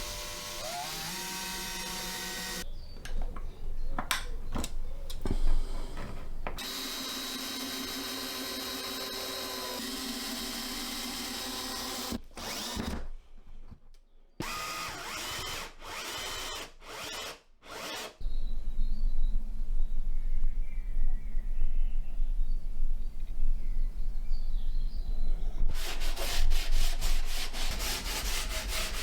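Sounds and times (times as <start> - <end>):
power drill running: 0.0 - 2.6, 6.6 - 13.1, 14.4 - 18.2.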